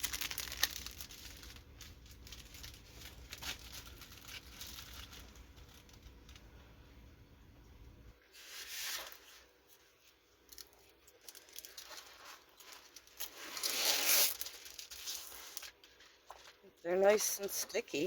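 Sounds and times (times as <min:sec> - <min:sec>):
plastic packaging crinkling: 0:00.0 - 0:06.6, 0:10.4 - 0:18.0.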